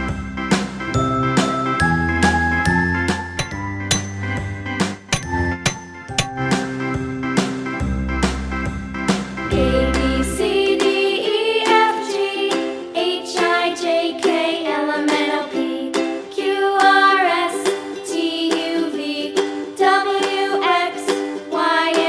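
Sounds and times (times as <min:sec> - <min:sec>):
children's music with plucked strings: 0:09.8 - 0:22.0.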